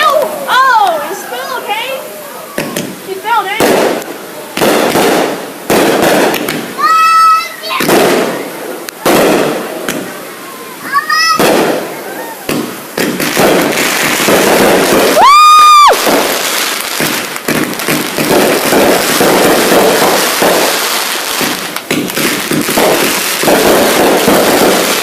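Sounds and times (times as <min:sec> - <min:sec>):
fireworks crackling and banging: 0:00.0 - 0:25.0
shrill firework whistle: 0:15.0 - 0:16.2.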